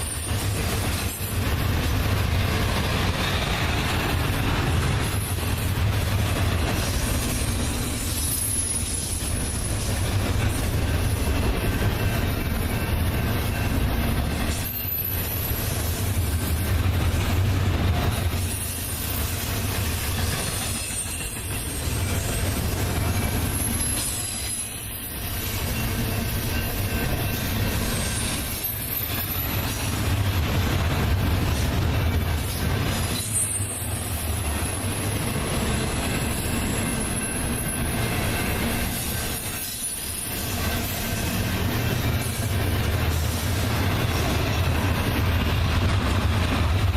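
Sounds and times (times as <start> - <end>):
train wheels rumbling on rail: 0.0 - 46.9
high wheel squeal: 6.8 - 16.8, 18.3 - 30.0, 32.5 - 45.7.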